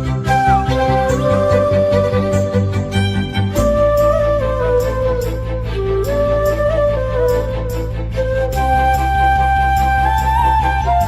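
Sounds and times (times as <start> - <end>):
violin melody over bass beat: 0.0 - 11.0.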